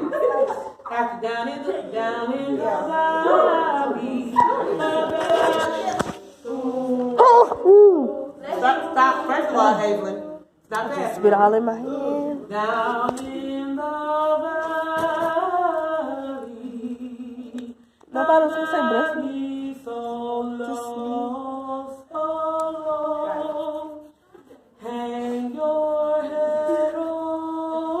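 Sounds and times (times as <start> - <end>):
person singing long notes: 6.4 - 8.9.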